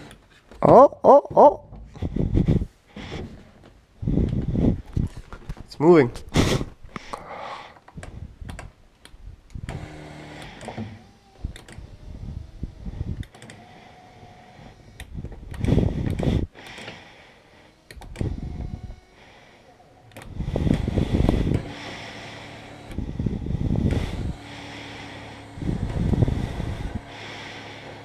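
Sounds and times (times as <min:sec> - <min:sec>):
electric seat motor humming: 0:09.5 - 0:28.0.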